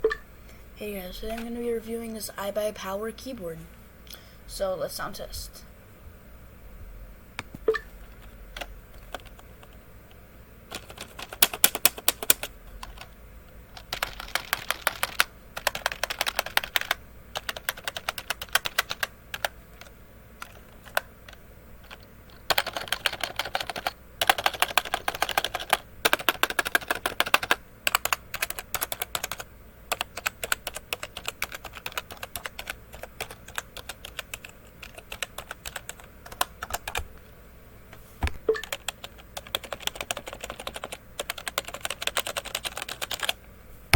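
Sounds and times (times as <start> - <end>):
keyboard keys clicking: 10.7 - 13.1, 13.8 - 37.1, 38.3 - 43.4.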